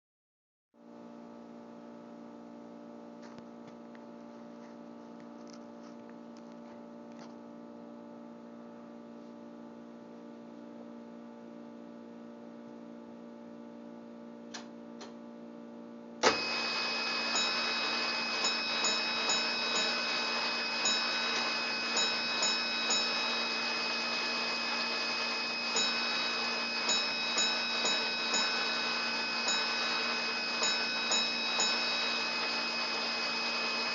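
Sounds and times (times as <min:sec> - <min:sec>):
bell striking a coded signal: 0:16.2 - 0:33.9
fire alarm sounding: 0:16.2 - 0:33.9
steady hum: 0:16.2 - 0:33.9.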